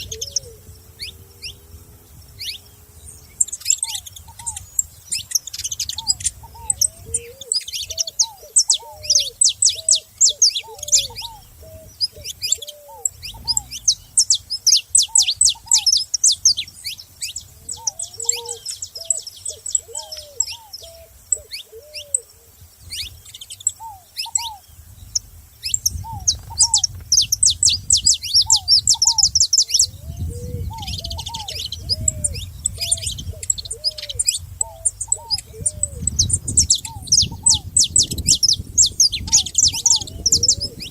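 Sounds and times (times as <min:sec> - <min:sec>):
finches chirping: 0:02.4 - 0:40.9
bird whistling low notes: 0:03.3 - 0:16.0, 0:25.6 - 0:40.9.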